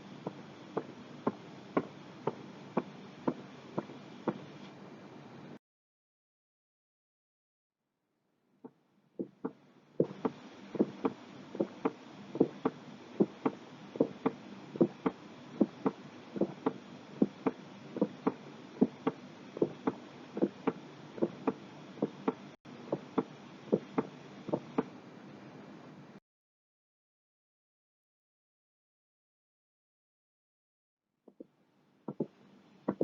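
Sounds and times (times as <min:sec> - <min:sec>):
faint hiss: 0:00.0 - 0:05.6, 0:09.7 - 0:26.2
heartbeat through stethoscope: 0:09.2 - 0:24.9, 0:32.1 - 0:32.3.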